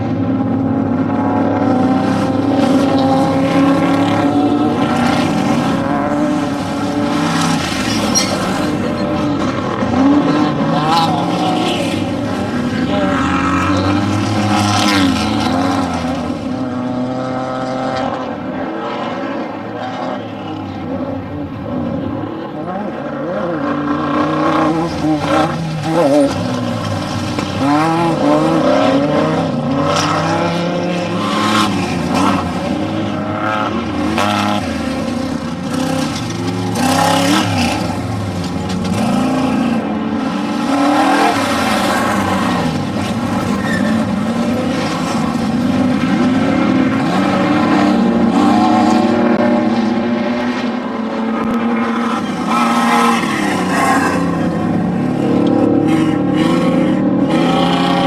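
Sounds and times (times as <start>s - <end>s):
race vehicle engines revving: 0.0s - 58.0s
tyre and gravel noise: 24.9s - 30.2s.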